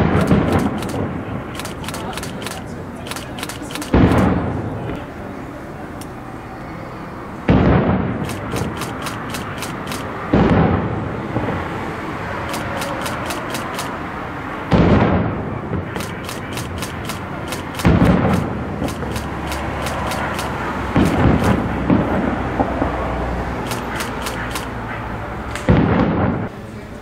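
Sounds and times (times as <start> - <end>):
fireworks bursting in heavy booms: 0.0 - 1.5, 3.9 - 4.8, 7.5 - 8.8, 10.2 - 11.7, 14.7 - 16.5, 17.3 - 23.1, 25.7 - 26.5
rumble of fireworks bursts: 0.0 - 5.5, 7.4 - 26.7.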